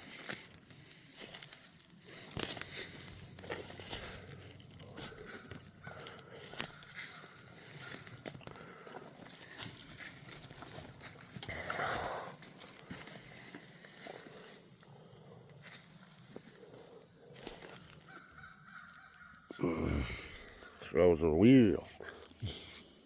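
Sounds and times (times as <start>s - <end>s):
insect buzz: 0.0s - 23.0s
twigs snapping: 2.2s - 7.2s, 17.3s - 19.3s.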